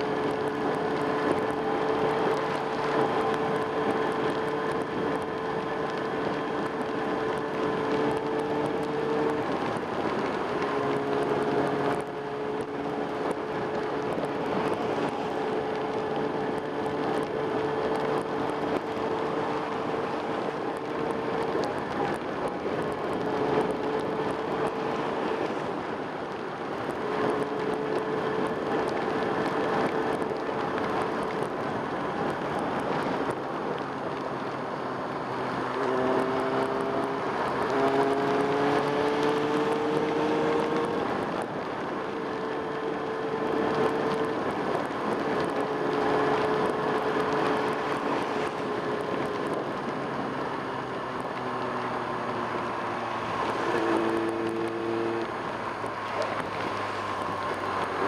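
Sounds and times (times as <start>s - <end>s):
motorcycle engine running: 0.0s - 58.0s
wind and road noise: 0.0s - 58.0s.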